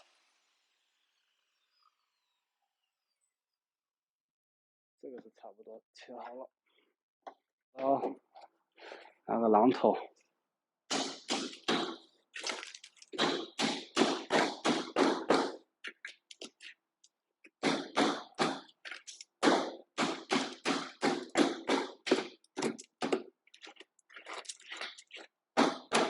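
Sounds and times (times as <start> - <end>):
hammer knocking on wood: 13.2 - 15.6, 17.6 - 18.6, 19.4 - 23.3, 25.6 - 26.0.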